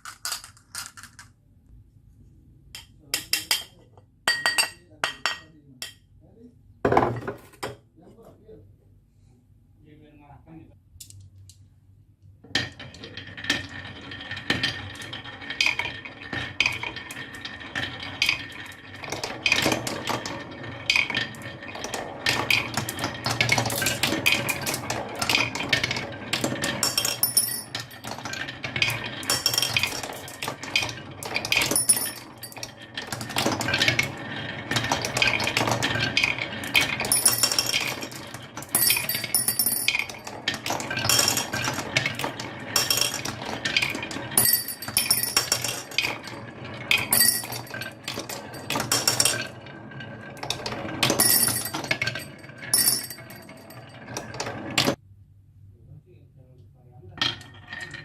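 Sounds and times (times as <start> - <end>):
marbles clattering down a track: 12.5 - 55.0, 57.2 - 58.0.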